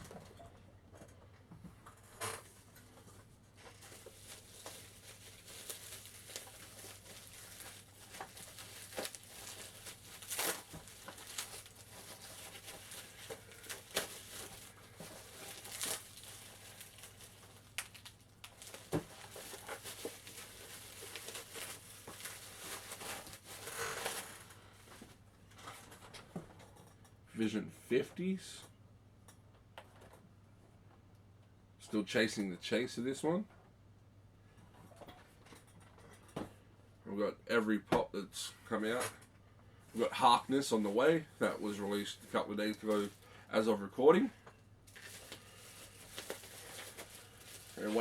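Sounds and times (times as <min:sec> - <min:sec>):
packaging crinkling: 0:03.6 - 0:24.6, 0:44.9 - 0:48.0.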